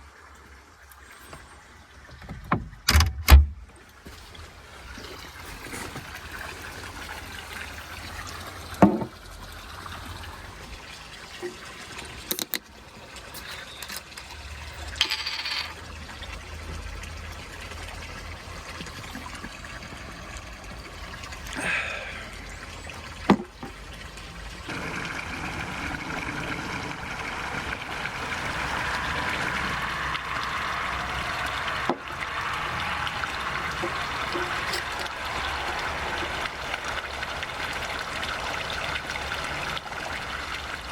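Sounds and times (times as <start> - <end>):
water running: 3.5 - 40.9
metallic clinks and knocks: 15.0 - 15.8.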